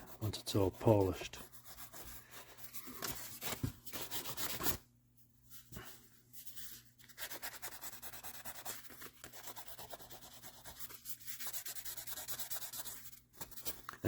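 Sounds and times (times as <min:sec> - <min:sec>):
sandpaper scratching on metal: 0:07.1 - 0:13.1.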